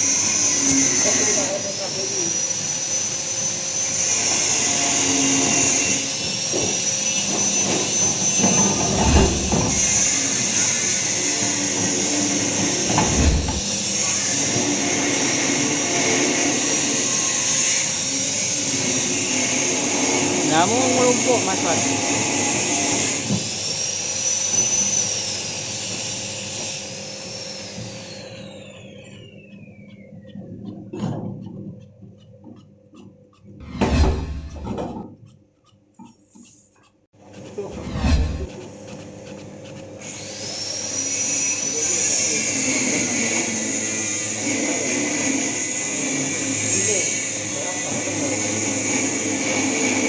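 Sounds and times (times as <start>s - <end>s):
machine motor whining: 0.6s - 15.0s, 33.6s - 34.8s, 37.7s - 38.5s
machine motor running down: 8.5s - 10.3s, 12.6s - 13.9s, 33.6s - 34.8s, 37.7s - 38.6s.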